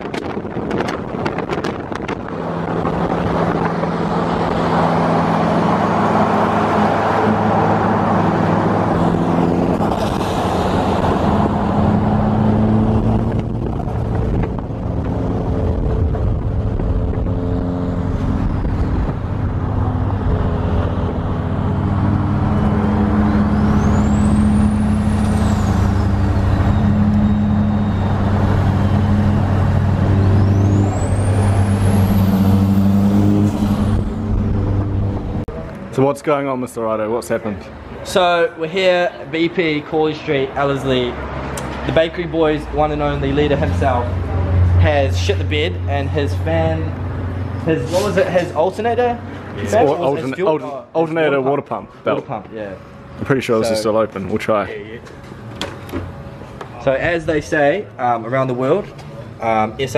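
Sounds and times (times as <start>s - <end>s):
high whistle: 23.4s - 29.6s.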